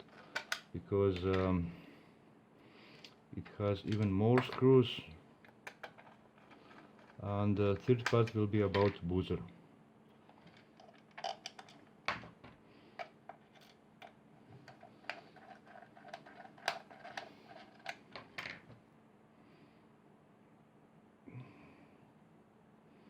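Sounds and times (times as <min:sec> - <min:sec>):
plastic parts clicking and tapping: 0:00.0 - 0:01.5, 0:05.4 - 0:07.2, 0:07.8 - 0:09.0, 0:10.3 - 0:18.7.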